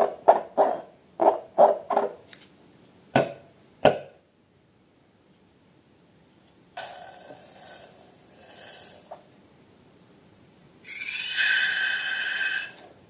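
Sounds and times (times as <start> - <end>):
balloon squeal: 10.8 - 12.9.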